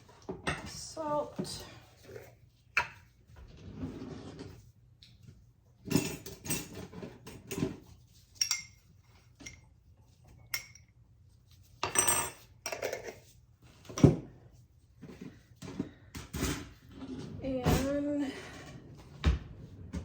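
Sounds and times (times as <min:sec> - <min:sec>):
utensils and dishes clattering: 0:05.8 - 0:09.7, 0:11.8 - 0:13.3, 0:15.6 - 0:18.0.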